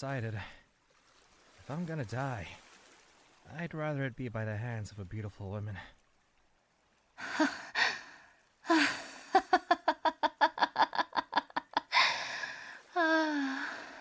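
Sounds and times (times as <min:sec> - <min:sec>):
person laughing: 0:08.7 - 0:12.2
breathy gasps: 0:11.9 - 0:14.0.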